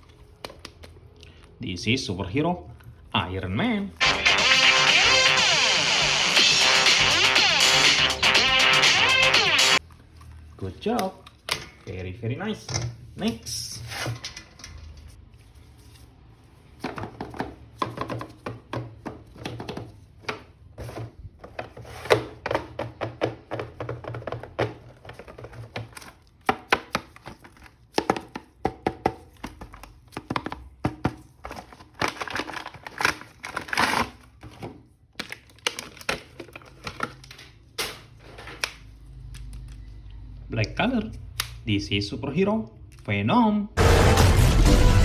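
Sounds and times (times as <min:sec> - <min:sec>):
plastic packaging crinkling: 0:31.4 - 0:39.8.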